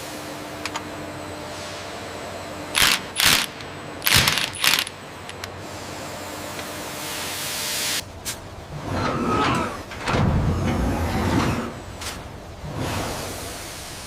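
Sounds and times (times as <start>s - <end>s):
machinery hum: 0.0s - 14.0s
loud sharp bursts: 2.8s - 4.9s.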